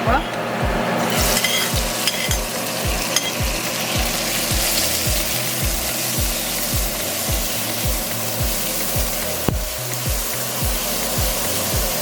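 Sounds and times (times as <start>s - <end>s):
background music with low beat: 0.0s - 12.0s
food sizzling in hot oil: 0.4s - 12.0s.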